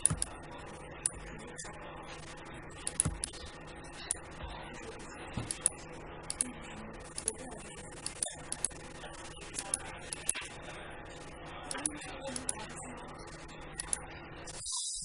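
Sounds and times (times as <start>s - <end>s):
computer mouse clicking: 0.0s - 0.4s, 1.0s - 1.3s, 2.8s - 4.2s, 5.4s - 8.8s, 9.4s - 10.5s, 11.7s - 12.7s, 13.8s - 14.0s
faint steady hum: 0.0s - 15.0s.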